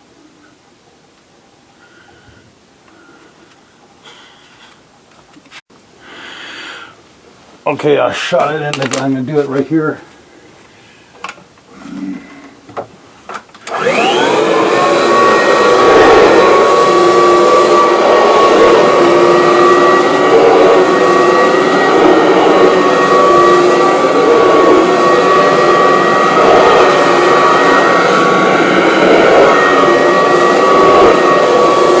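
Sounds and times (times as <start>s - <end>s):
vacuum cleaner running: 13.6s - 32.0s.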